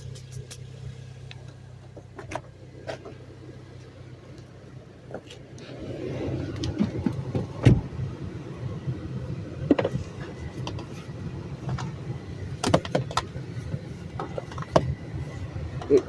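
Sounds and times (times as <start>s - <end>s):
car engine humming: 0.0s - 16.0s
sharp clicks and knocks: 12.6s - 13.4s.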